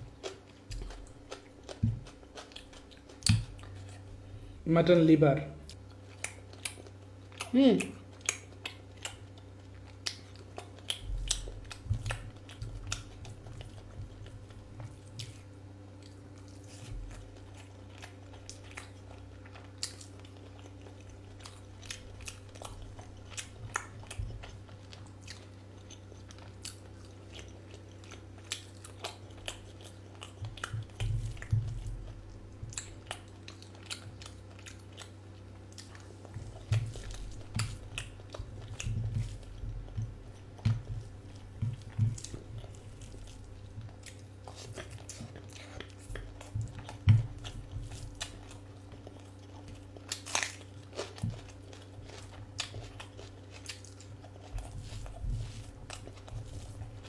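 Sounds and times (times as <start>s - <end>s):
close chewing and biting: 0.0s - 4.6s, 5.6s - 57.0s
steady low hum: 0.0s - 57.0s
wet clicks and smacks: 0.6s - 3.8s.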